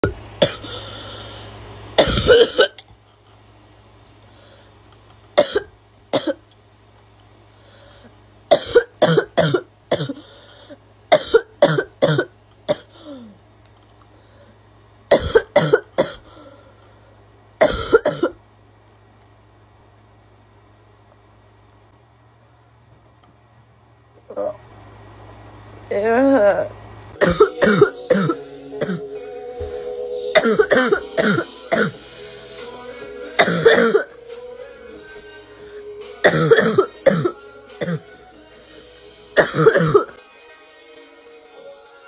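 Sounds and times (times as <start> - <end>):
girl barking cough: 2.0 - 2.8, 5.4 - 6.4, 8.5 - 10.2, 15.1 - 16.2, 17.6 - 18.4, 27.2 - 29.0, 30.3 - 32.0, 33.4 - 34.1, 39.4 - 40.1.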